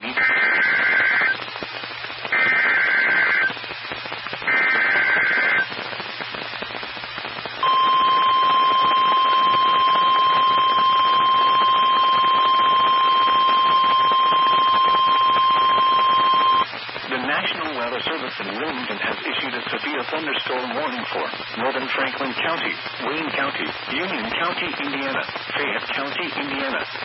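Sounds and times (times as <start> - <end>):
steady alarm tone: 7.6 - 16.6
digital header tone bursts: 7.6 - 16.7.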